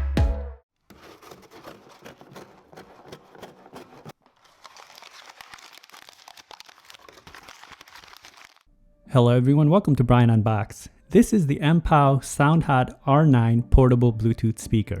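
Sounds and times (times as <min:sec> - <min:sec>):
packaging crinkling: 0:00.8 - 0:08.7.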